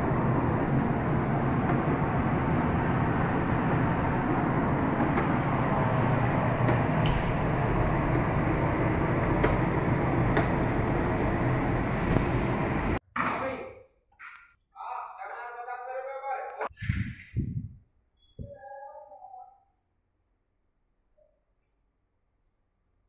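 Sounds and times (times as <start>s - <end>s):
boiler room machinery noise: 0.0s - 13.0s.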